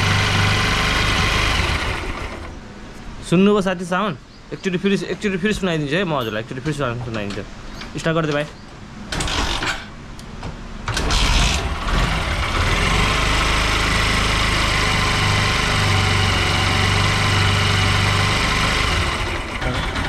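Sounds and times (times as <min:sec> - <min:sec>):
motorcycle engine starting and idling: 0:00.0 - 0:02.6, 0:09.1 - 0:10.0, 0:10.8 - 0:20.0
man speaking: 0:03.2 - 0:08.6.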